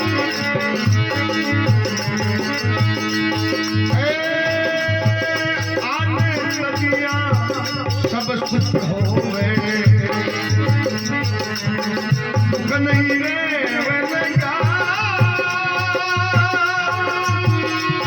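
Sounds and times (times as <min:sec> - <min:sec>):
jingling percussion: 0:00.0 - 0:18.0
steady drum beat: 0:00.0 - 0:18.0.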